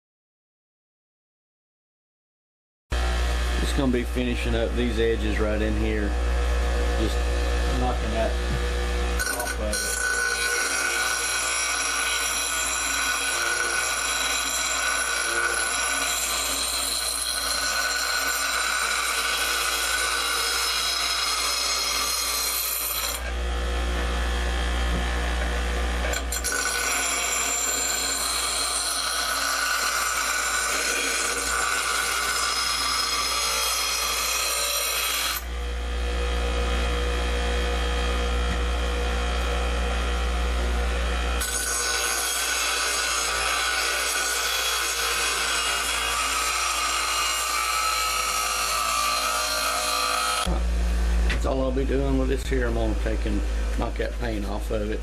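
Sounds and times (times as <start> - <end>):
motor hum: 3.0 - 9.7, 23.2 - 26.6, 35.4 - 41.5
power grinder grinding steel: 3.0 - 54.6.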